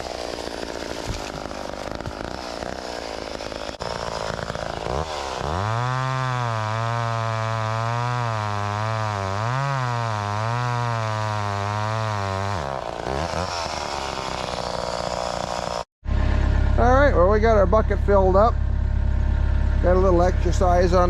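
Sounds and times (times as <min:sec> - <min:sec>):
chainsaw cutting firewood: 0:00.0 - 0:21.0.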